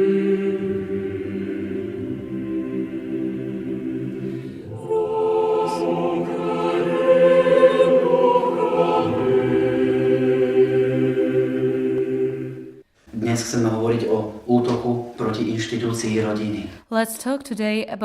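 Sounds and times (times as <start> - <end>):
choir chanting long notes: 0.0 - 12.9.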